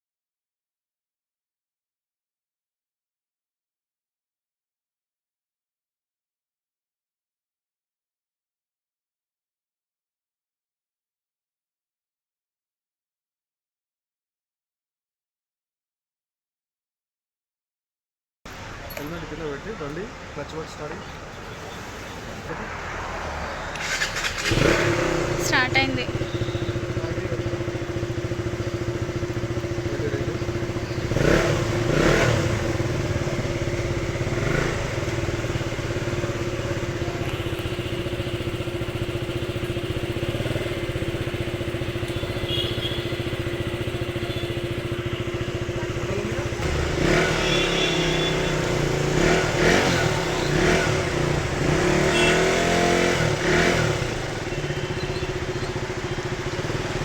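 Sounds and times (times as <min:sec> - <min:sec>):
motorcycle engine revving: 0:23.7 - 0:57.0.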